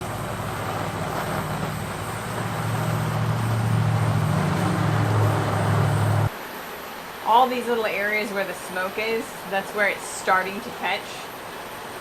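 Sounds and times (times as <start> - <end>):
air rushing into fire: 0.0 - 6.4
forge blower humming: 0.0 - 6.4.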